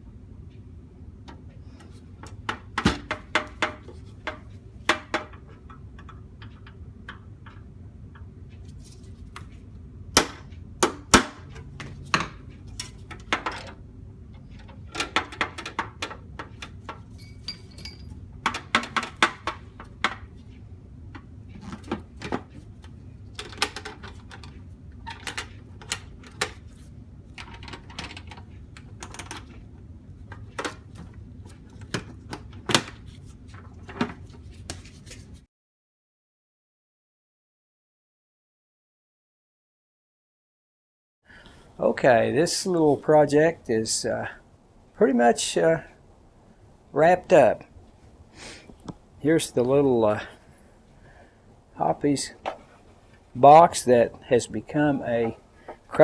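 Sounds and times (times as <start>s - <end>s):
low hum: 0.0s - 32.6s
light metallic clanks: 14.4s - 20.3s.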